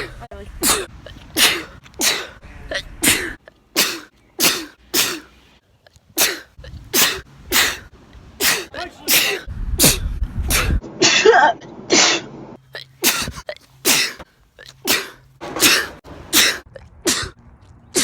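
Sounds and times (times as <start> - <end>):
person sneezing: 0.6 - 2.4, 3.0 - 5.3, 8.4 - 12.3, 13.0 - 14.2, 14.8 - 17.3.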